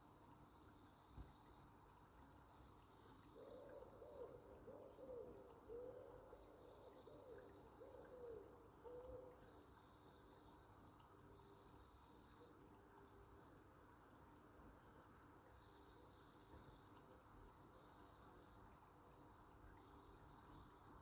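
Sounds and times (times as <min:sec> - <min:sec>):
bird calling faintly: 0:03.2 - 0:13.2.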